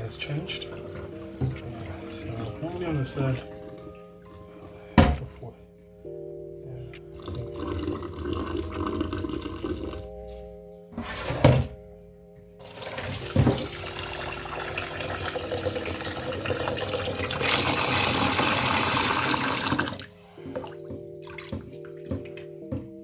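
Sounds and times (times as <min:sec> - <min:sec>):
tap water splashing into a pot: 0:00.7 - 0:04.4, 0:12.7 - 0:22.4.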